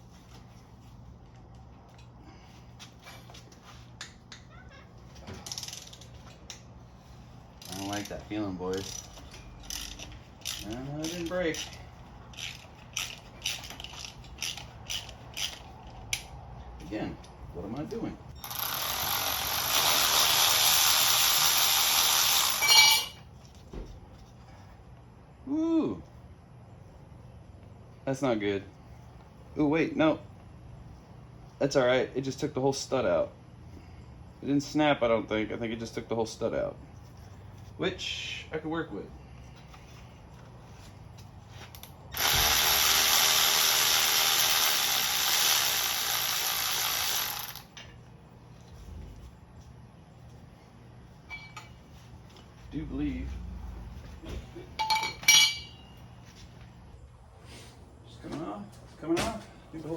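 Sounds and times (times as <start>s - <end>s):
power tool running: 18.4s - 22.8s, 42.1s - 47.7s.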